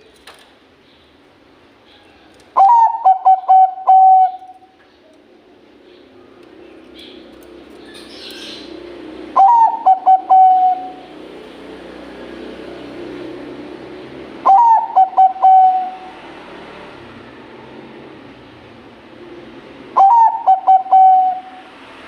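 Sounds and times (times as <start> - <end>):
dove cooing: 2.6 - 4.7, 9.3 - 11.2, 14.4 - 16.2, 19.9 - 21.6
steady low hum: 2.8 - 22.0.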